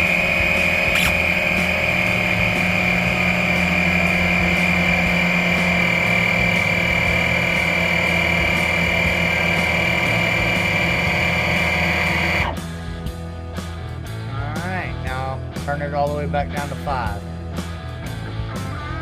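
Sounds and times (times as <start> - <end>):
air compressor whining: 0.0 - 12.8.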